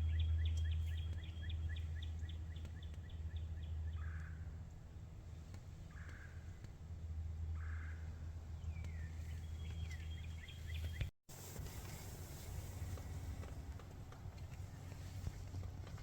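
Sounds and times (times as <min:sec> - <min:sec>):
distant bird calls: 0:00.0 - 0:11.1
songbird chirps: 0:00.0 - 0:11.1.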